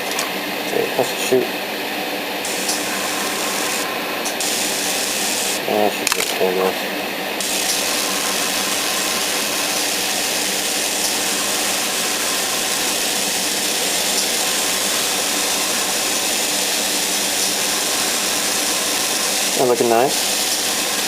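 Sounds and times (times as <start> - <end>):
extractor fan hum: 0.0 - 6.0, 6.8 - 21.0
airbrush hiss of compressed air: 2.5 - 5.6, 7.4 - 21.0.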